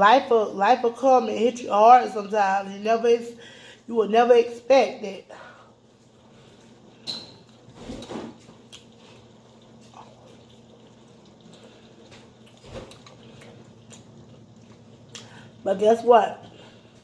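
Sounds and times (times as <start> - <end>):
person chewing and smacking: 8.4 - 15.4.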